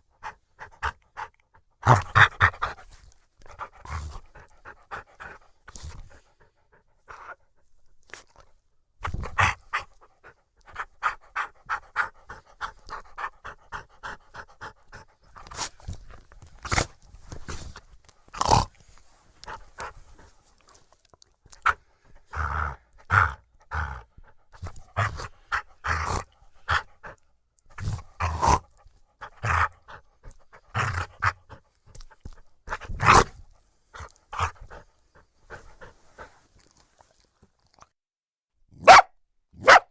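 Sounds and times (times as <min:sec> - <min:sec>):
dog panting: 0:00.0 - 0:08.5, 0:09.1 - 0:17.8, 0:19.3 - 0:33.2, 0:33.9 - 0:37.2
dog mouth sounds: 0:23.0 - 0:33.4.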